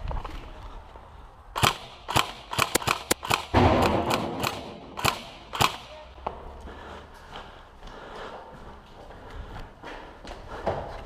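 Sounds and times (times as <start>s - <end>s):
airsoft gun shots: 1.6s - 6.0s.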